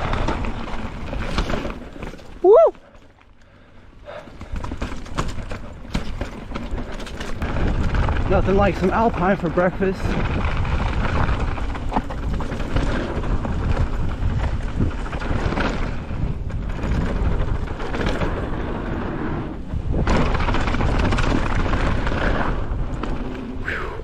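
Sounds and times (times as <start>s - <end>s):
bike knocking and rattling: 0.0s - 23.7s
tyres rumbling on dirt and rock: 0.0s - 24.0s
wind buffeting microphone: 6.9s - 24.0s.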